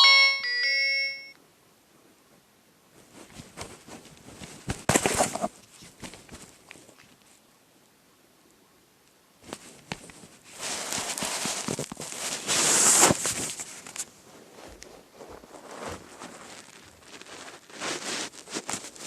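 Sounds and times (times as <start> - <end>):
crackling ringtone from phone speaker: 0.0 - 1.4.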